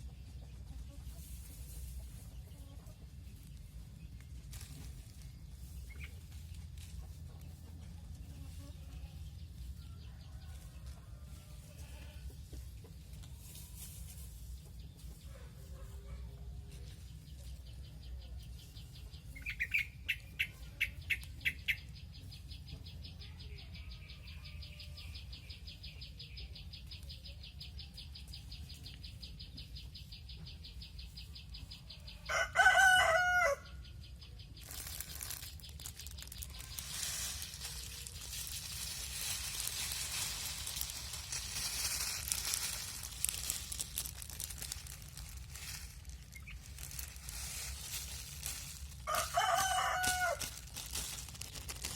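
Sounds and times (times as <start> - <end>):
rooster crowing: 32.3 - 33.8, 49.0 - 50.6
steady rustling hiss: 34.6 - 51.9.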